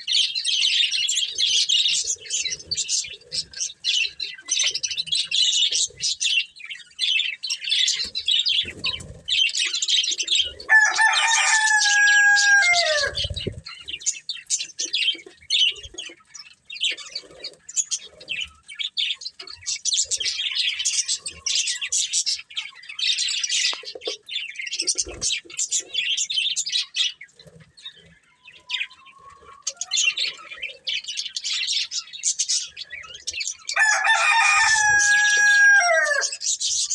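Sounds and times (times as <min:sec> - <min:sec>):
budgerigars chirping: 0:00.0 - 0:36.9.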